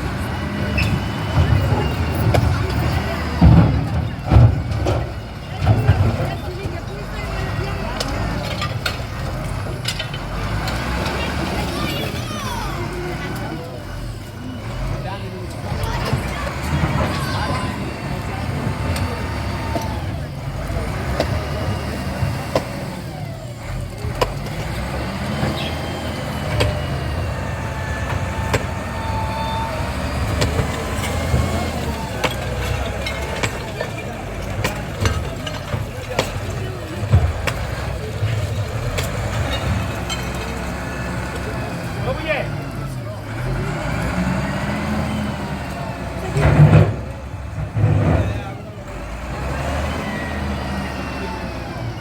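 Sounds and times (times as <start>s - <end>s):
heavy machine engine running: 0.0s - 52.0s
sharp knocks and clatter: 30.1s - 40.7s.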